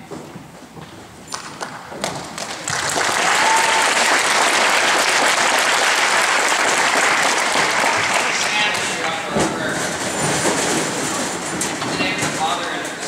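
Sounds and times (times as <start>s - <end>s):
audience applauding: 1.6s - 9.1s.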